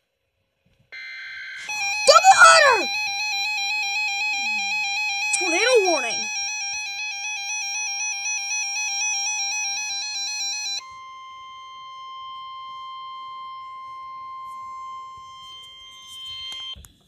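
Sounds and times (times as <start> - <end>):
warbling electronic alarm: 1.0 - 16.8
steady warning alert tone: 3.9 - 6.3.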